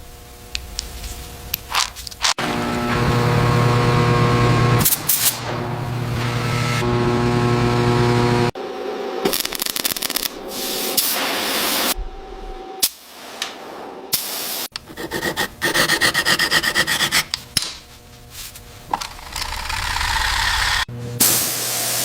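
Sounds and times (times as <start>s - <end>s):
hand scrubbing a surface: 14.9s - 18.9s.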